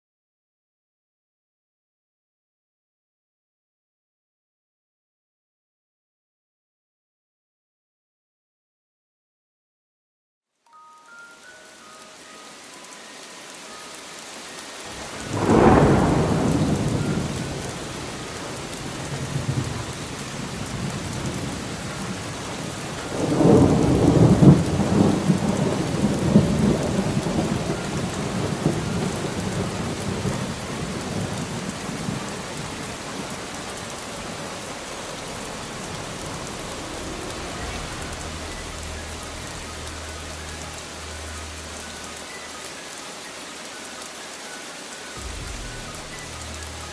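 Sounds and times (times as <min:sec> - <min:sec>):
steady rain: 0:10.5 - 0:46.9
thunder rumbling: 0:14.9 - 0:42.2, 0:45.2 - 0:46.9.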